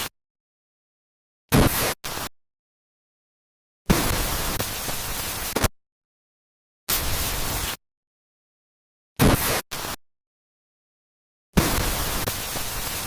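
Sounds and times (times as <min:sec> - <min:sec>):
harsh static noise bursts: 0:01.5 - 0:02.3, 0:03.9 - 0:05.7, 0:06.9 - 0:07.8, 0:09.2 - 0:10.0, 0:11.6 - 0:13.0.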